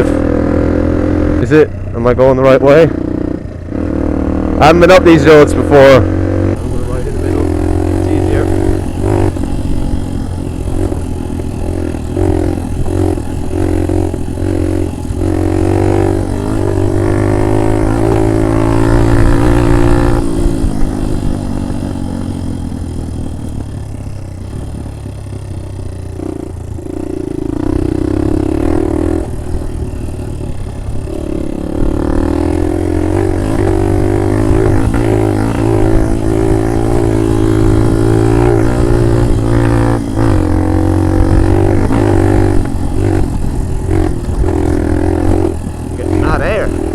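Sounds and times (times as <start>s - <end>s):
small motorbike engine running: 0.0s - 46.9s.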